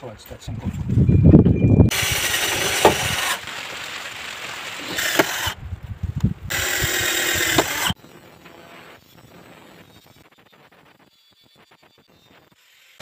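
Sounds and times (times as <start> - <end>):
handheld power tool running: 1.9 - 3.5, 4.8 - 5.6, 6.5 - 8.0.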